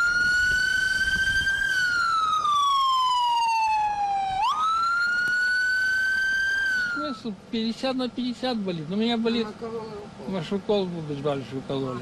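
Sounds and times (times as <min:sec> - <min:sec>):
ambulance siren wailing: 0:00.0 - 0:07.3.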